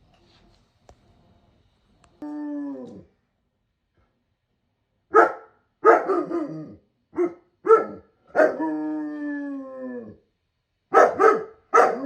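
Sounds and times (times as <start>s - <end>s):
dog barking: 5.1s - 6.5s, 7.2s - 8.6s, 10.9s - 12.0s
dog howling: 7.8s - 10.2s.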